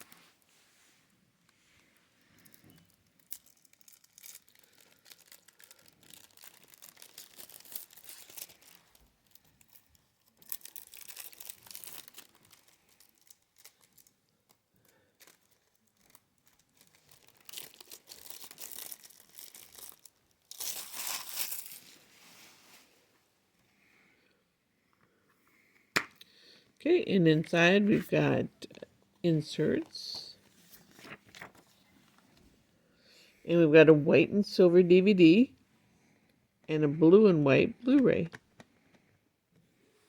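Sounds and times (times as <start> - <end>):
plastic shrink wrap crackling: 2.2 - 22.9, 29.6 - 32.4.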